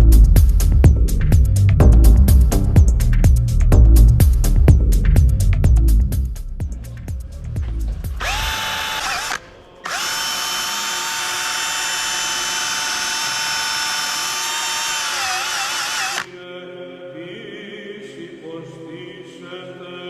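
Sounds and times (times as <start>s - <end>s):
power tool motor whining: 8.2s - 16.4s.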